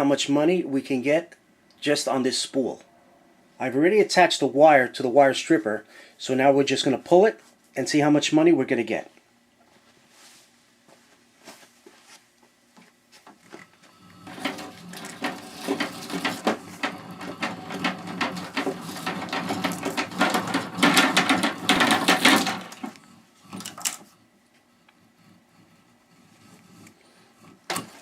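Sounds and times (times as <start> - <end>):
wire stripper clicking rattle: 14.0 - 24.0.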